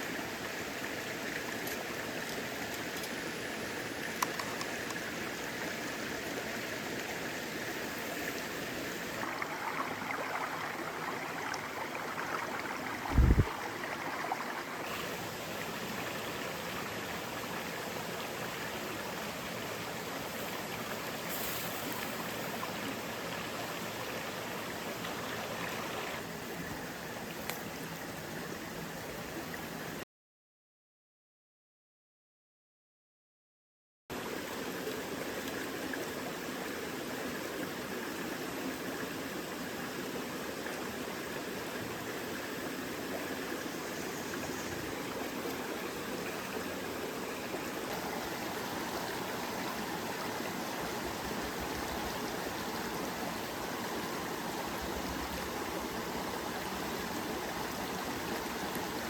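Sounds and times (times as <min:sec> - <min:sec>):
mountain stream flowing: 0:00.0 - 0:30.0, 0:34.1 - 0:59.0
brief low thump: 0:13.1 - 0:13.5.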